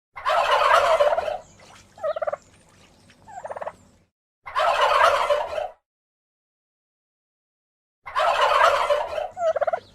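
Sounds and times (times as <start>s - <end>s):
turkey gobbling: 0.2s - 2.4s, 3.2s - 3.8s, 4.5s - 5.8s, 8.1s - 9.9s.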